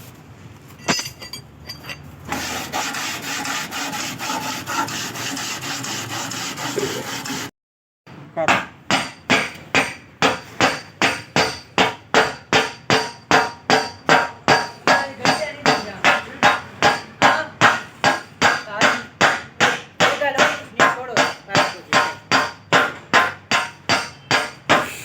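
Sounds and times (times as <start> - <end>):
hammer beating sheet metal: 8.5 - 25.0.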